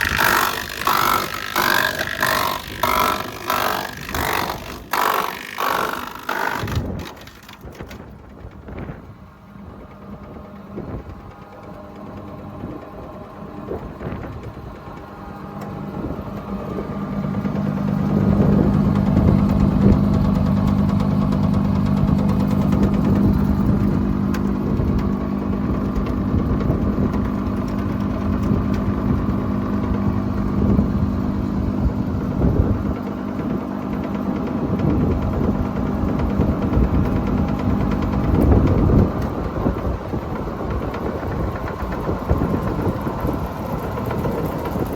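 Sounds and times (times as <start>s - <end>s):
wood cracking in chipper: 0.0s - 8.6s
wood chipper humming: 0.0s - 44.9s.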